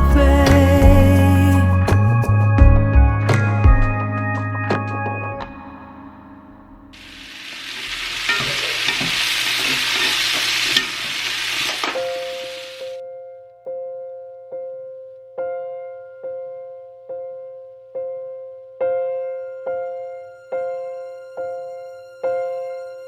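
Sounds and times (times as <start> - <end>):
soft piano music: 0.0 - 8.4, 12.0 - 23.0
food sizzling in a pan: 7.0 - 13.0.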